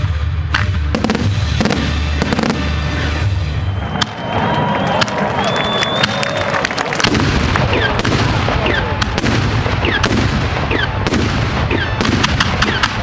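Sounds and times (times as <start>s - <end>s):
firework bangs: 0.7s - 3.3s, 4.9s - 13.0s
firework falling whistles: 2.5s - 6.5s.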